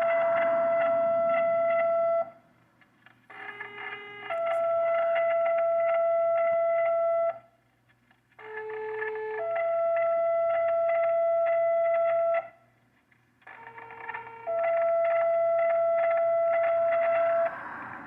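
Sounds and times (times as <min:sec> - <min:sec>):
two-tone radio paging tones: 0:13.4 - 0:17.6.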